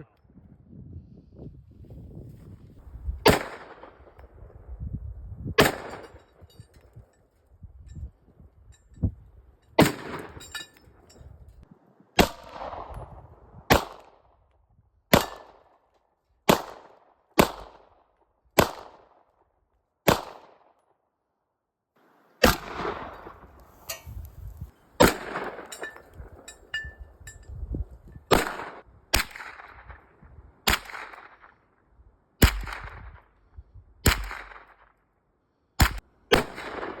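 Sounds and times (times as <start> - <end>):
gunshots with echo: 3.2 - 4.0, 5.6 - 6.2, 22.4 - 23.4, 25.0 - 25.8, 34.1 - 34.8.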